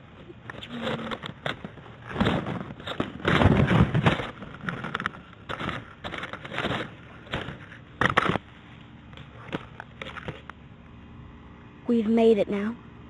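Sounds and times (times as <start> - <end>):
rustling and scraping: 0.0 - 10.9.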